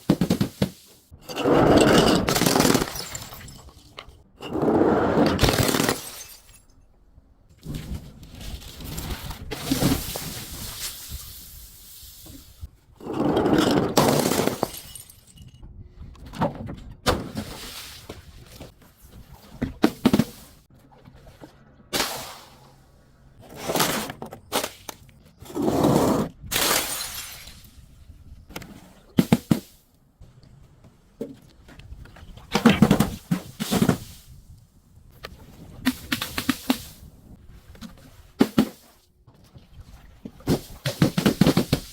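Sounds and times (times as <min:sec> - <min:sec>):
glass bottles breaking and crunching: 0:01.2 - 0:04.2, 0:05.4 - 0:06.9, 0:13.6 - 0:15.6, 0:26.5 - 0:27.8.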